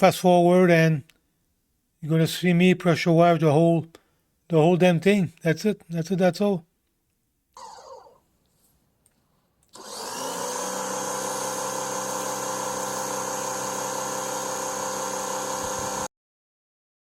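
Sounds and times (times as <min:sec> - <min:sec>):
pressure washer motor whine: 0:07.6 - 0:08.2, 0:09.8 - 0:16.1.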